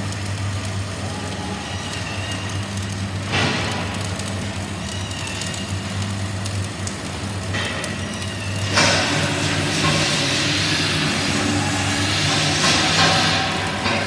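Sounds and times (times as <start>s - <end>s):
welding arc crackling and hissing: 0.0s - 14.0s.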